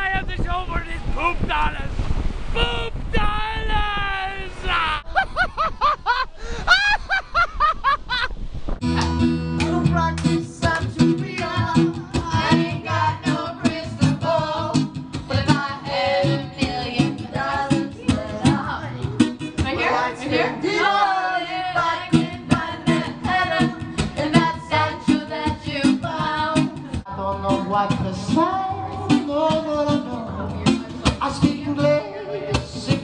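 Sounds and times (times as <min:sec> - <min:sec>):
person singing over guitar: 0:09.0 - 0:33.0.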